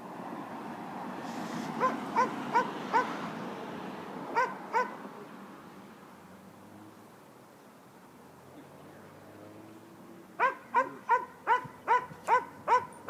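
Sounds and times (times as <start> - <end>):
dog yapping: 1.8 - 3.1, 4.4 - 5.0, 10.4 - 13.0.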